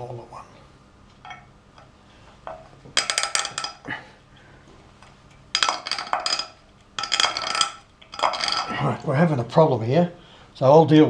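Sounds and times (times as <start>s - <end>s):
hand tools clinking against metal: 1.2s - 4.0s, 5.0s - 9.4s.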